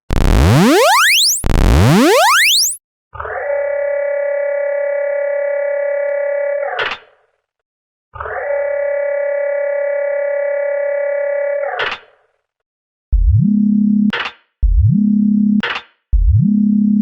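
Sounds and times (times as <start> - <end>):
buzzy electronic tone: 0.0 - 2.8
low tone sliding up in pitch: 0.1 - 2.8.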